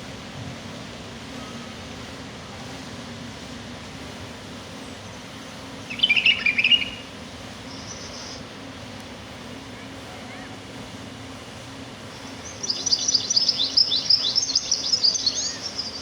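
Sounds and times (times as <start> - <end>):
outdoor background hiss: 0.0 - 16.0
songbird chirping: 5.0 - 8.4, 12.2 - 16.0.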